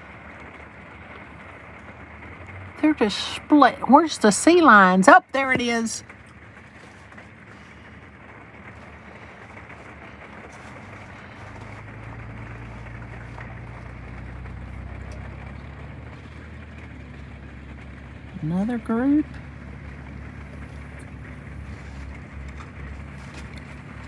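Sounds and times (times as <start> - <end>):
low engine drone: 0.0 - 24.0.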